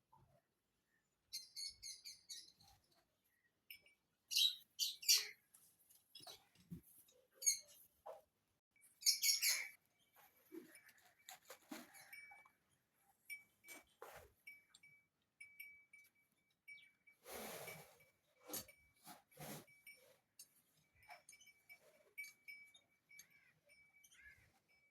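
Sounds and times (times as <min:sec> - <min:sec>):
birds chirping: 0:00.9 - 0:07.9, 0:09.0 - 0:12.4, 0:21.0 - 0:24.9.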